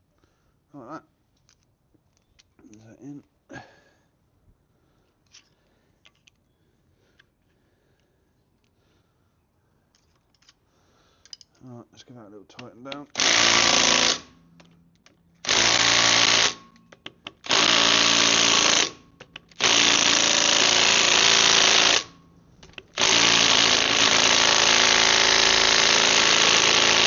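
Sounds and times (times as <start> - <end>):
impact wrench bursts: 13.0 - 14.7, 15.4 - 27.0.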